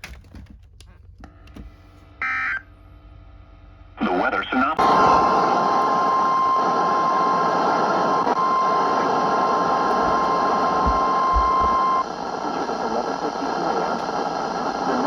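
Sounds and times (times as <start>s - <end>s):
radio receiver hiss: 4.0s - 15.0s
steady alarm tone: 4.8s - 12.1s.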